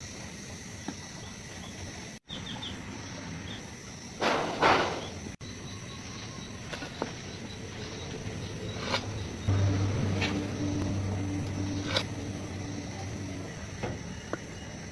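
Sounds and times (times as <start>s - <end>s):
high insect chirr: 5.0s - 14.9s.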